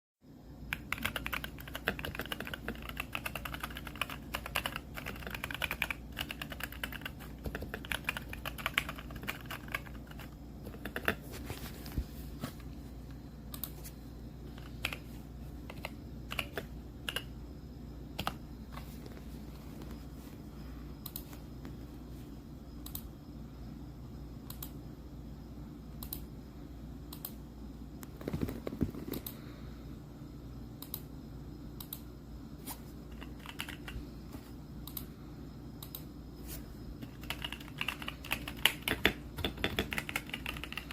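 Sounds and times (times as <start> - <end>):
mechanical keyboard typing: 0.7 - 11.2, 14.6 - 15.0, 15.7 - 17.3, 33.1 - 34.0, 37.0 - 40.9.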